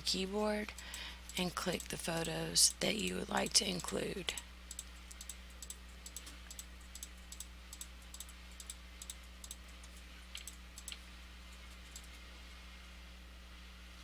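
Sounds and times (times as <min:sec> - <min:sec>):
low electrical hum: 0:00.0 - 0:14.0
computer mouse clicking: 0:03.8 - 0:11.0, 0:11.7 - 0:12.2.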